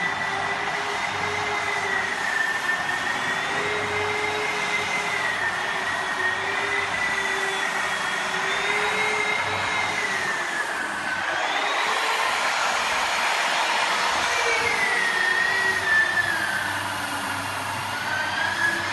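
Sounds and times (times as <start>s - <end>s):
air rush and abrasion: 0.0s - 18.9s
drywall sander motor whine: 0.0s - 18.9s.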